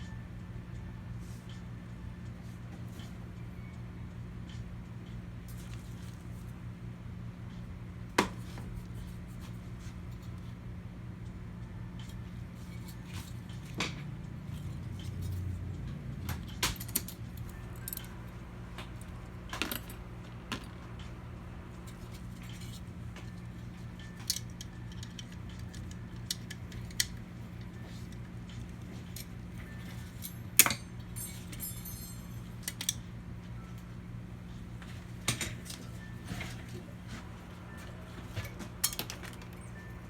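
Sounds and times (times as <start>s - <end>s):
steady low hum: 0.0s - 40.0s
metallic clicks of small parts: 24.0s - 29.3s, 30.1s - 33.0s.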